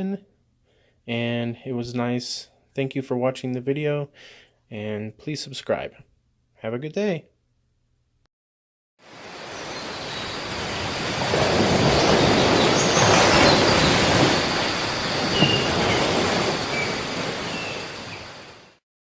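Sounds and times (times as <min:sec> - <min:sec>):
steady rushing noise: 0:09.1 - 0:18.8
faint high whistles: 0:12.2 - 0:18.2.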